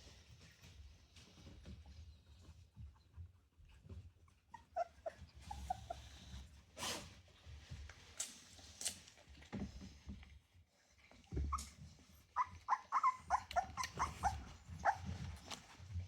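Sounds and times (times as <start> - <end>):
rustling and light knocks: 0.0 - 4.5, 5.2 - 12.3, 13.7 - 16.0
puppies whimpering: 11.4 - 15.4.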